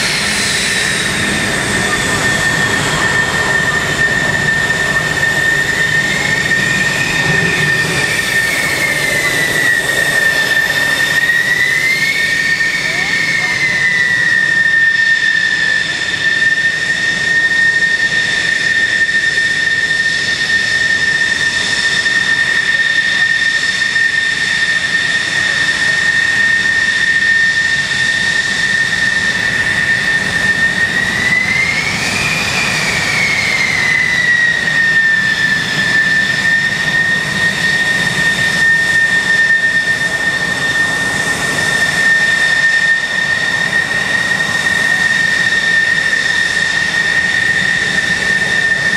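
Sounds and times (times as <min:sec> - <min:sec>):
jet engine turbine whine: 0:00.0 - 0:48.9.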